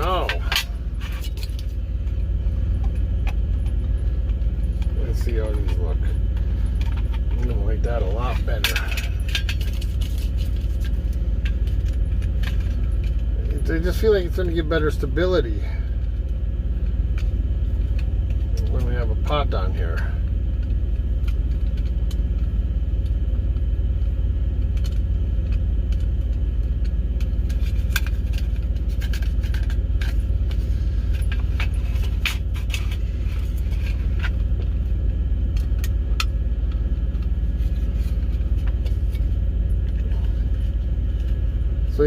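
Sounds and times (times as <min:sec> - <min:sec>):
truck engine idling: 0:00.0 - 0:42.0
metal parts clinking: 0:08.2 - 0:13.2.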